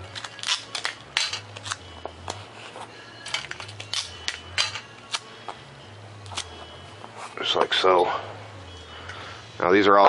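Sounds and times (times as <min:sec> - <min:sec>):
tape and paper clicks and rustles: 0:00.0 - 0:02.4, 0:03.2 - 0:05.2, 0:06.2 - 0:06.6.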